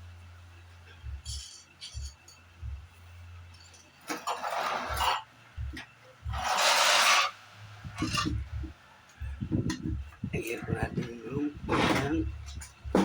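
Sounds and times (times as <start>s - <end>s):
rough scraping strokes: 4.0s - 5.3s, 6.3s - 8.4s.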